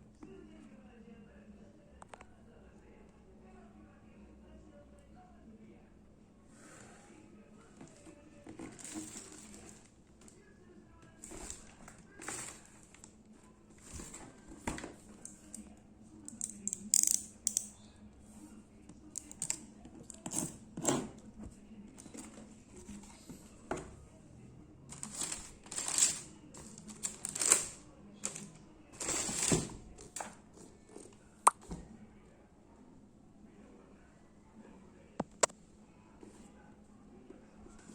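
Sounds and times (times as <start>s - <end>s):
packaging rustling and crinkling: 8.6s - 9.9s, 11.2s - 13.1s, 24.9s - 29.7s.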